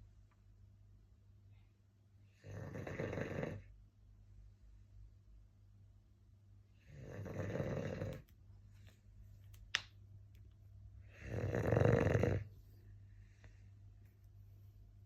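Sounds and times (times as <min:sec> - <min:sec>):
dog snoring: 0:02.3 - 0:03.7, 0:06.8 - 0:08.2, 0:11.0 - 0:12.5.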